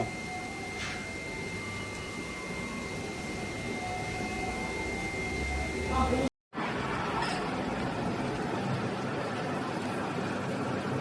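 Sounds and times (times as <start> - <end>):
welding equipment hum and hiss: 0.0 - 6.3
high constant whine: 0.0 - 11.0.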